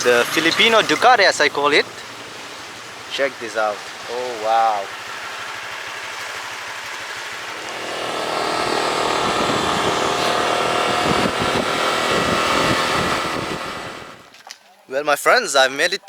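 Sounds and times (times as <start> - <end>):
small motorcycle engine running: 0.0 - 14.3
wind noise: 7.5 - 14.3.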